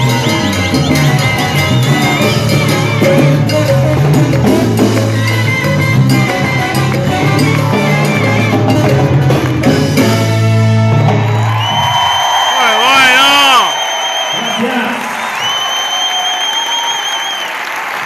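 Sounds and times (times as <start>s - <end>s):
live salsa band playing: 0.0s - 13.8s.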